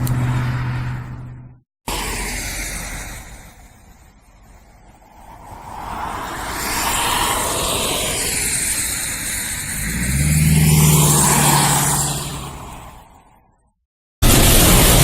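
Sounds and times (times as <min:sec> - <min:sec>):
low engine hum: 0:00.0 - 0:01.6
tyres hissing on wet road: 0:01.9 - 0:13.1, 0:14.2 - 0:15.0.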